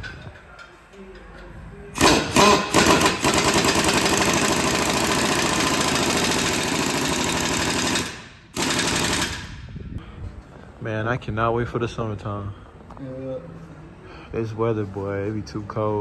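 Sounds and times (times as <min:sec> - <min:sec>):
pneumatic impact wrench hammering: 0:02.0 - 0:09.7.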